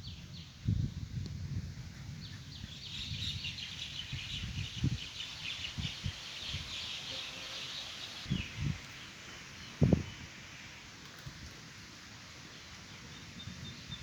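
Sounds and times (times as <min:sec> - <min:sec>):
small birds chirping: 0:02.2 - 0:10.3.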